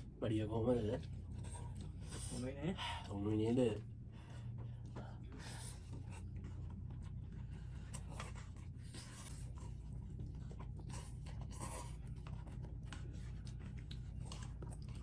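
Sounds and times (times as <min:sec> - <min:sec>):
steady low hum: 0:00.0 - 0:15.0
eating clicks and scrapes: 0:04.6 - 0:15.0.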